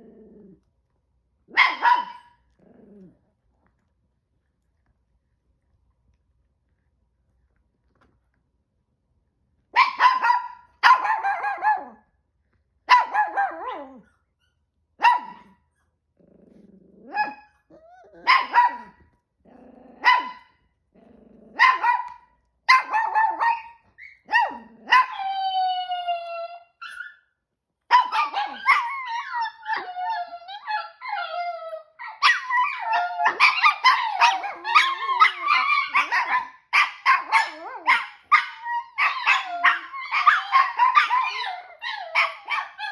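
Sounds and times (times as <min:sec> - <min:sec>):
dogs barking: 0:01.6 - 0:02.3, 0:09.8 - 0:12.0, 0:12.9 - 0:13.7, 0:18.2 - 0:19.0, 0:21.6 - 0:23.7
dog whining: 0:17.1 - 0:18.4, 0:23.0 - 0:27.2, 0:28.1 - 0:36.5, 0:37.2 - 0:42.9
dogs howling: 0:28.1 - 0:36.5, 0:37.1 - 0:42.9.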